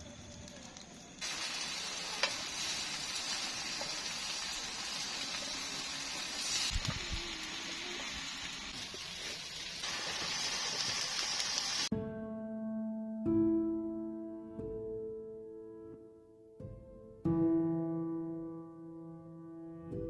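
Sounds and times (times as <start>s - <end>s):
food sizzling in a frying pan: 0.0s - 11.9s
soft piano music: 11.9s - 20.0s.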